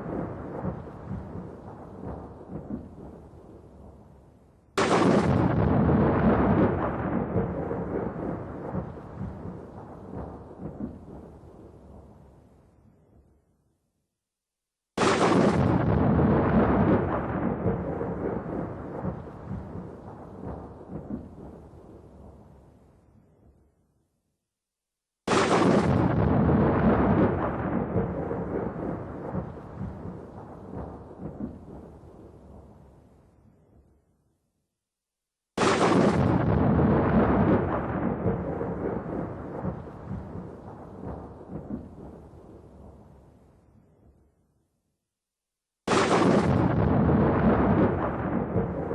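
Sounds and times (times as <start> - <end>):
rolling thunder rumble: 0.0 - 4.0, 4.8 - 12.1, 15.0 - 22.5, 25.3 - 32.9, 35.6 - 43.2, 45.9 - 48.9
thunder crack: 4.8 - 11.3, 15.0 - 21.6, 25.3 - 31.9, 35.6 - 42.2, 45.9 - 48.9.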